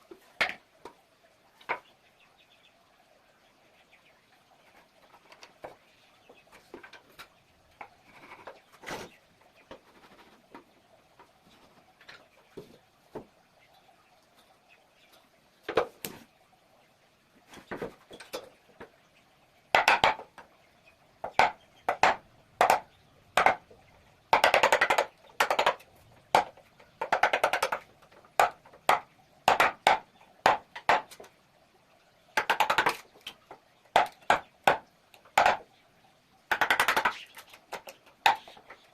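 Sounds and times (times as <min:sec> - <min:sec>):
sharp knocks on wood: 0:19.7 - 0:20.3, 0:21.2 - 0:23.6, 0:24.3 - 0:27.8, 0:28.4 - 0:31.2.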